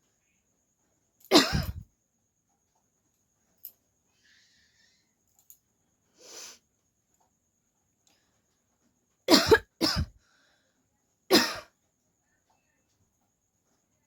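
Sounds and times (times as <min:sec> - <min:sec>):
woman coughing: 0:01.3 - 0:01.8, 0:09.3 - 0:10.1, 0:11.3 - 0:11.7
faint breathy sound: 0:04.1 - 0:05.2, 0:10.2 - 0:11.0.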